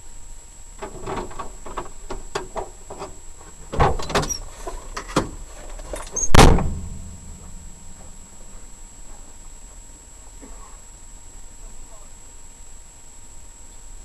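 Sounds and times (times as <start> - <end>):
loud deep bang: 6.3 - 8.4.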